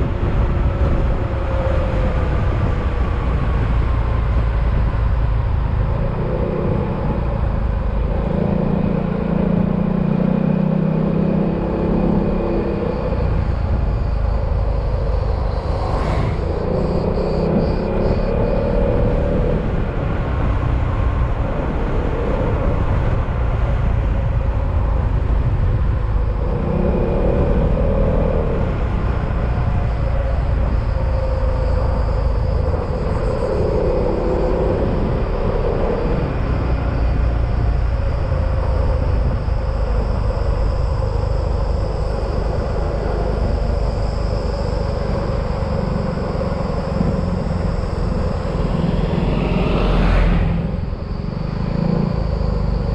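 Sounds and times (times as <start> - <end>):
wind and road rumble: 0.0 - 52.9.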